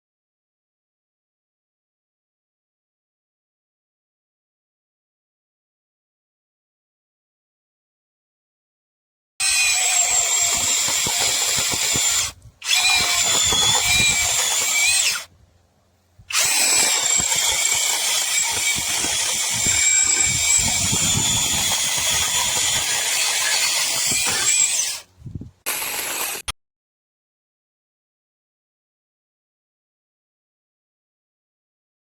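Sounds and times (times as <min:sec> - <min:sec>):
mini chainsaw high whine: 0:09.4 - 0:15.3, 0:16.3 - 0:25.1.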